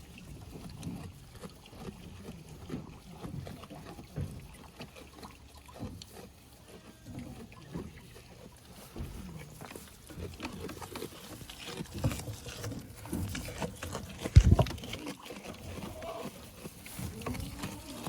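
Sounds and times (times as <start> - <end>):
goats making low sounds: 0.0 - 18.0
wind buffeting microphone: 14.2 - 14.9.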